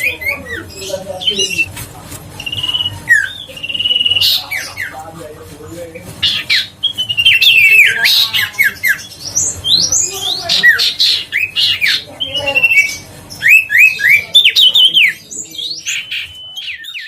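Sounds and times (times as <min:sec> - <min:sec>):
bird harsh chattering calls: 0:00.0 - 0:05.2, 0:06.0 - 0:17.0
bird singing whistled notes: 0:12.3 - 0:17.0.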